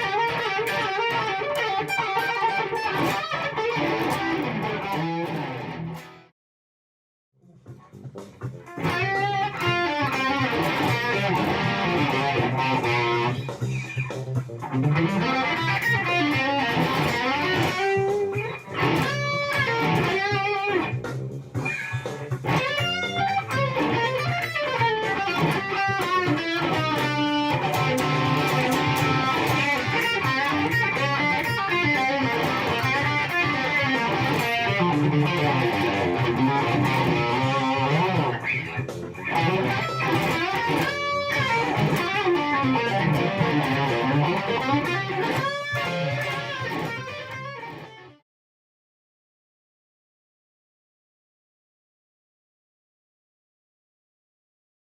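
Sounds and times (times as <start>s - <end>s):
electric guitar lead solo: 0.0s - 6.3s, 8.7s - 21.0s, 21.6s - 48.2s.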